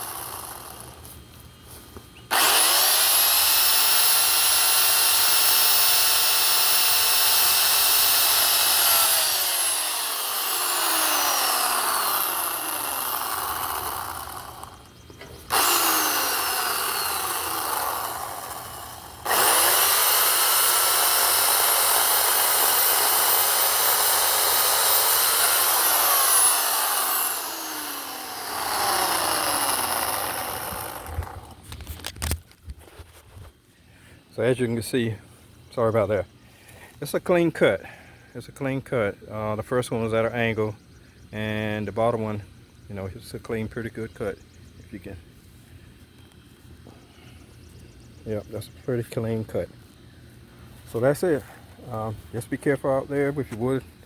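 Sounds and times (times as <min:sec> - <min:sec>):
electric chainsaw cutting wood: 0:00.0 - 0:01.2, 0:02.3 - 0:32.4.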